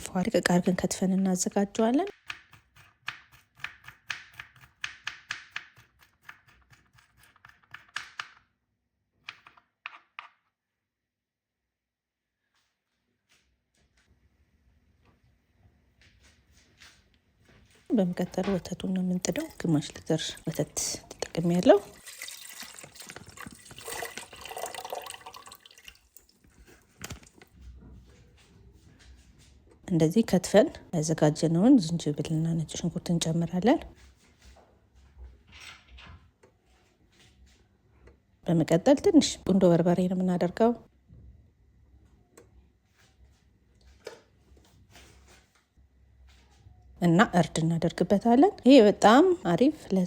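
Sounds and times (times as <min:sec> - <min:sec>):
knife chopping on cutting board: 0:02.1 - 0:08.4
milk pouring into a pan: 0:21.8 - 0:27.4.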